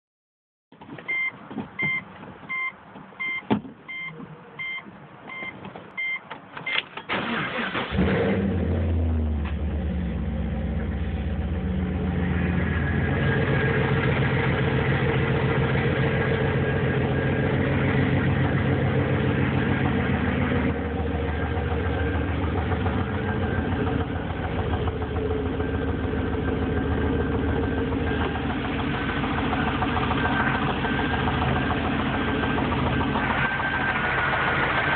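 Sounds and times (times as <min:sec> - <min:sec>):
car warning chime beeping: 0:01.1 - 0:06.9
car engine cranking and starting: 0:05.4 - 0:34.9
engine idling with rhythmic knock: 0:14.1 - 0:34.9.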